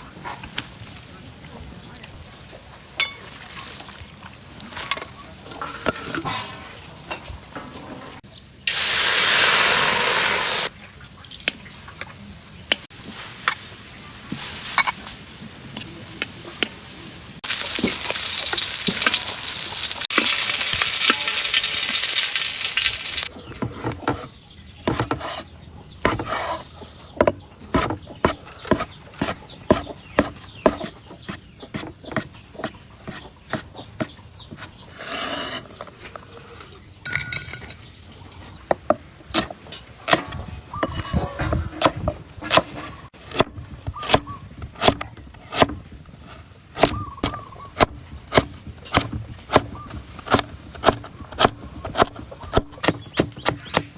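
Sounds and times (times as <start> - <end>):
egg sizzling in hot oil: 17.4 - 23.3.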